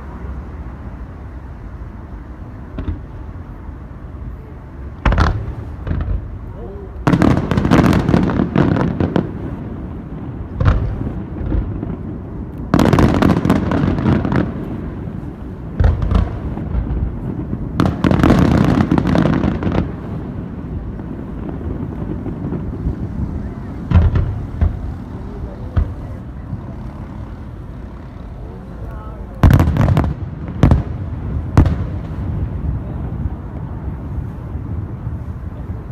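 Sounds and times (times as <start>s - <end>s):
rapid crackling of fireworks: 0.0s - 35.9s
fireworks booming: 2.6s - 3.8s, 4.8s - 35.9s.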